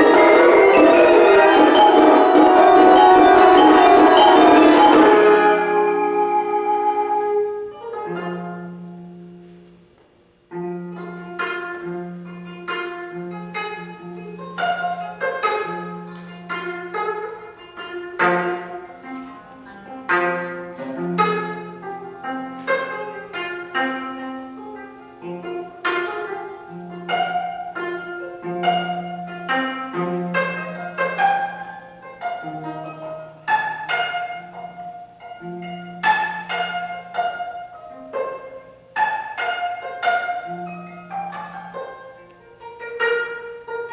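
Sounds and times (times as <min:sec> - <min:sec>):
held low notes: 0:00.0 - 0:07.5
chamber ensemble held chord: 0:00.0 - 0:07.6
plucked string notes: 0:00.0 - 0:43.9.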